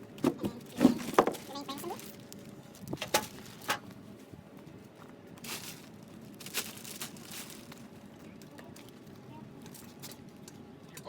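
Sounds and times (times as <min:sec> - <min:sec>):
parts knocking and rustling: 0:00.2 - 0:01.5.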